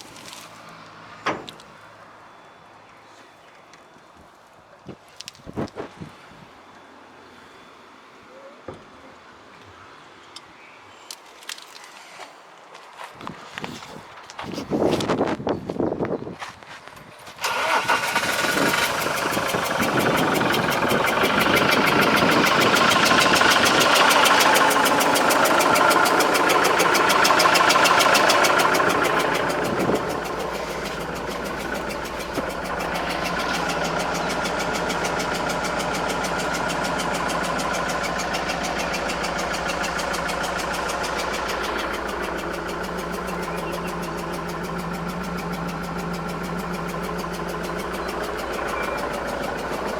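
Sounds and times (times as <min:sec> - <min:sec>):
diesel engine starting and idling: 0:17.2 - 0:49.9.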